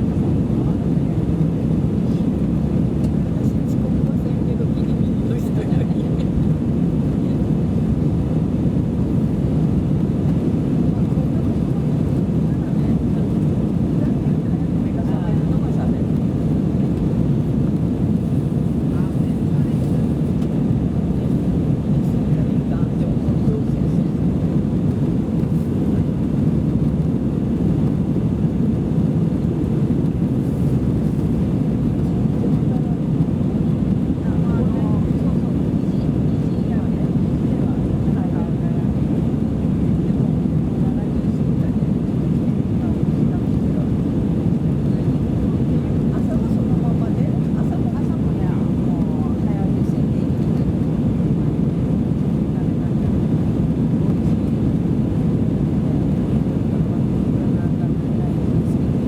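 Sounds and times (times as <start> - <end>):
aircraft engines rumbling in cabin: 0.0 - 59.0.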